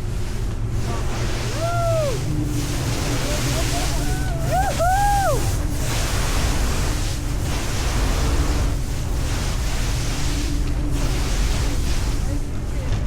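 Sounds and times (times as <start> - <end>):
boat engine rumble: 0.0 - 13.0
churning water: 0.0 - 13.0
wind on microphone: 0.0 - 13.0
whooping call: 1.4 - 5.6.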